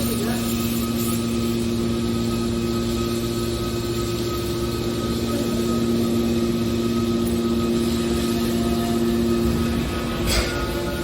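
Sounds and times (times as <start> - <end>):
baler machinery humming: 0.0 - 11.0.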